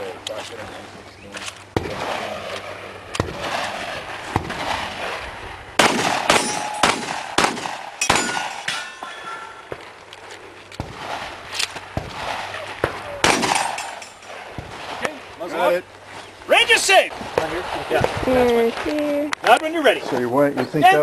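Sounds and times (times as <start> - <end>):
gunshots: 1.7 - 9.0, 10.8 - 15.2
steel targets ringing: 6.3 - 7.1, 8.0 - 9.8.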